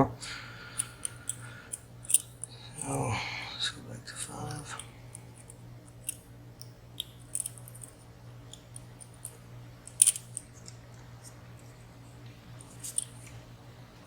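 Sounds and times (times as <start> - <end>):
lock pick clicking and scraping: 0.8 - 2.5, 5.4 - 10.7.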